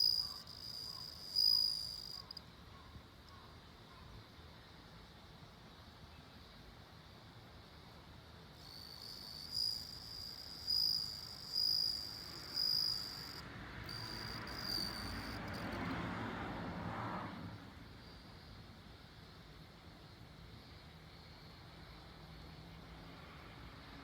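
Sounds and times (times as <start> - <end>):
cricket ringing trill: 0.0 - 2.5, 8.6 - 15.9.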